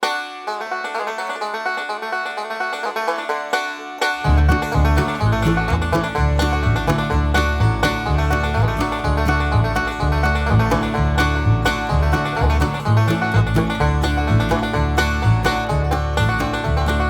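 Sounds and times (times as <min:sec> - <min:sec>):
fast-picked banjo: 0:00.0 - 0:17.0
bass line: 0:04.2 - 0:17.0.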